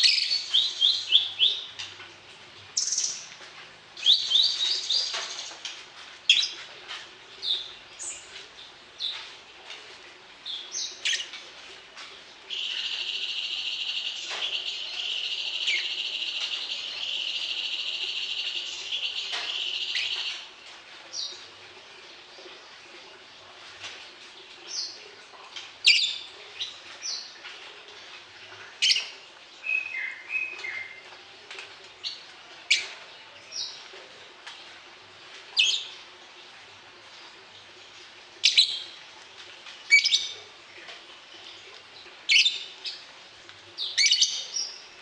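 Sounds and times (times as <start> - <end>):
songbird chirping: 0.0 - 2.0, 2.7 - 9.4, 10.4 - 22.6, 28.8 - 34.0
songbird trill: 4.0 - 5.7, 12.5 - 20.5, 28.8 - 31.0.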